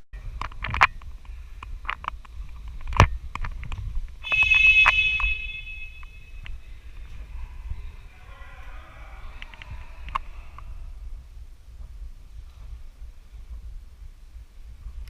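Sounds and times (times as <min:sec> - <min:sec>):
shrill steady tone: 0:04.2 - 0:10.7.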